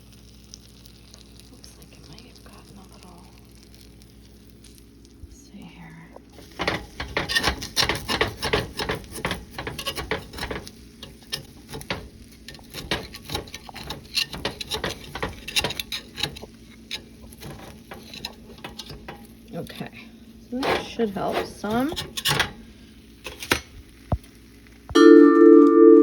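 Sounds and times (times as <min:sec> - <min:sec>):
scraping and crackling: 0:06.1 - 0:24.9.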